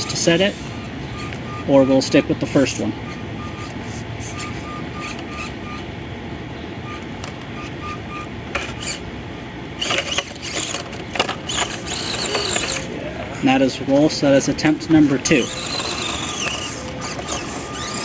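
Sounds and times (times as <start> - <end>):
toy truck scraping on rock: 0.0 - 1.4, 3.4 - 5.6, 8.6 - 9.0, 9.8 - 13.0, 13.6 - 18.0
small electric motor whining: 0.0 - 5.9, 6.8 - 9.1, 9.8 - 18.0.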